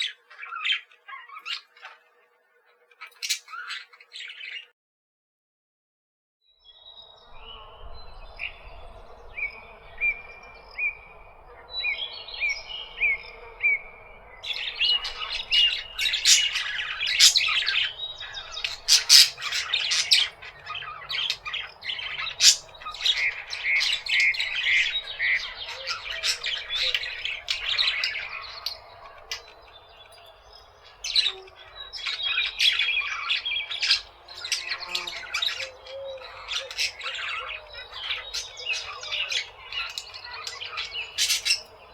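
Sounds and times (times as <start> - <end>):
parakeets chattering and squawking: 0.0 - 4.7, 14.4 - 41.9.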